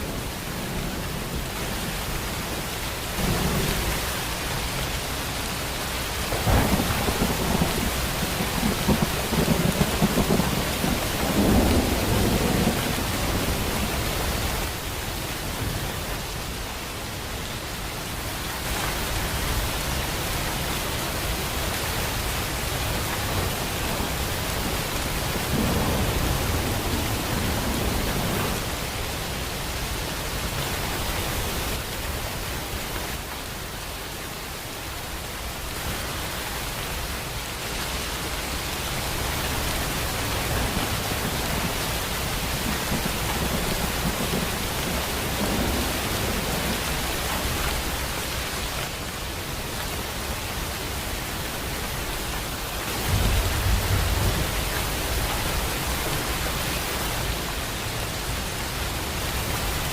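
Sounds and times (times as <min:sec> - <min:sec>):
heavy rain: 0:00.0 - 0:59.9
thunder rumbling: 0:06.2 - 0:15.0, 0:23.1 - 0:31.1, 0:39.1 - 0:48.0, 0:53.0 - 0:56.4.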